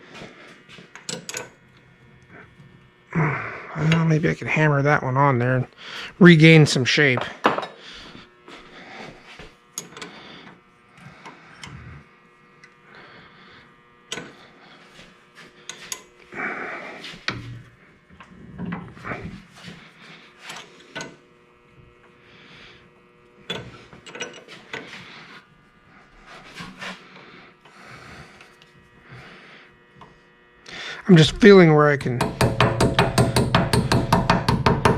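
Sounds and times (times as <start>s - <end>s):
metal tools clinking and scraping: 23.5s - 24.9s
sharp knocks: 32.0s - 34.9s.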